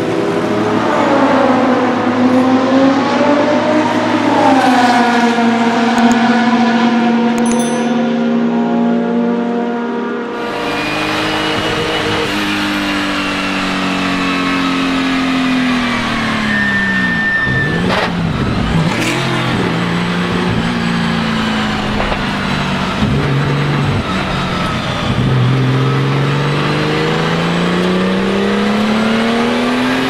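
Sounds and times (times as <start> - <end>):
race car engine: 0.0 - 30.0
brief high whistle: 16.4 - 18.0.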